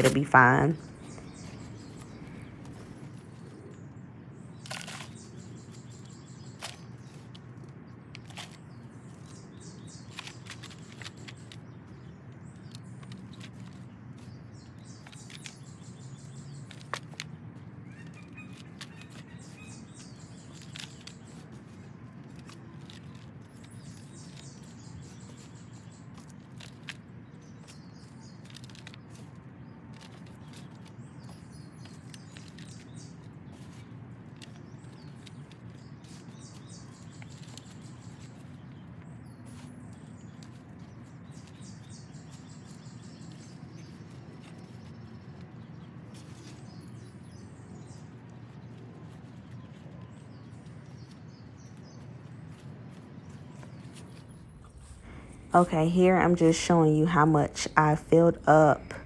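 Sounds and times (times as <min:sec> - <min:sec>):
birds chirping: 0:00.0 - 0:59.0
outdoor background noise: 0:00.0 - 0:59.0.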